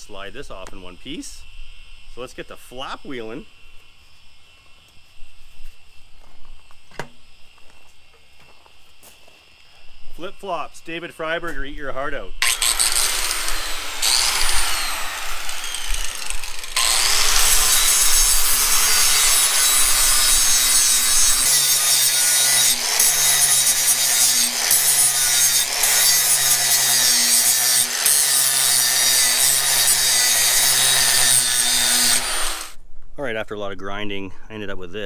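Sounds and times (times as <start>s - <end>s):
abrasive grinding metal: 12.4s - 32.7s
grinder motor hum: 12.4s - 32.8s.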